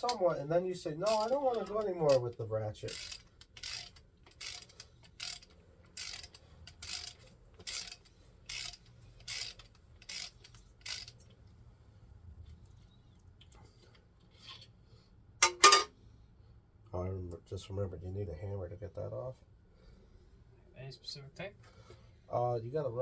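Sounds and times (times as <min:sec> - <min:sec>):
socket ratchet clicking: 0:01.0 - 0:02.2, 0:02.9 - 0:11.2
sharp metallic clank: 0:15.4 - 0:15.9.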